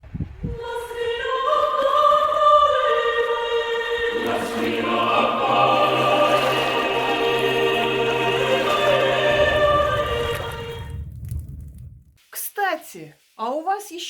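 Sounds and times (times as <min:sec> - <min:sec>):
choir singing held notes: 0:00.5 - 0:11.0.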